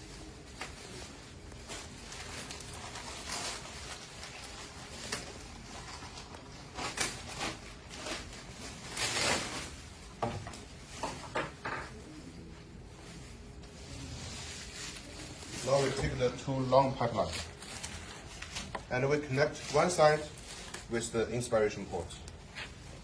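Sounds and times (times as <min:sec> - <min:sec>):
plastic parts rustling: 0:00.4 - 0:09.8.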